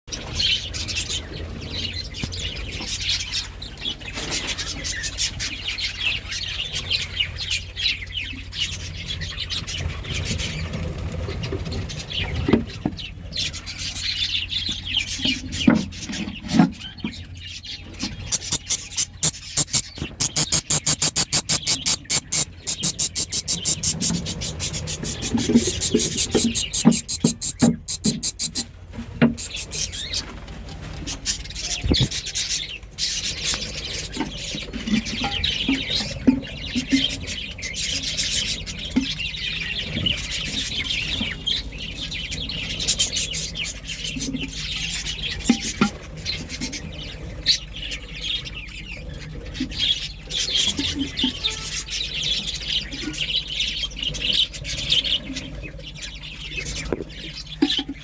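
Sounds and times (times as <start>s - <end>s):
rapid clicks: 18.3s - 24.0s, 25.7s - 28.7s
budgerigars chirping: 18.3s - 28.7s, 29.4s - 30.2s.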